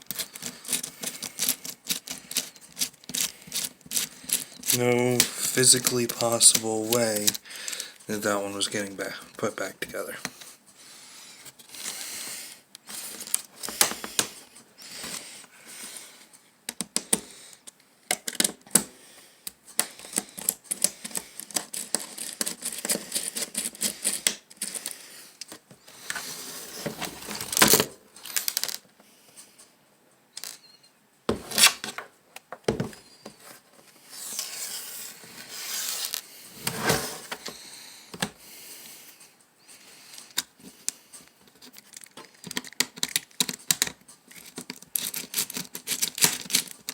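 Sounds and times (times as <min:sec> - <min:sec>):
plastic and metal parts clicking: 0:41.6 - 0:46.9.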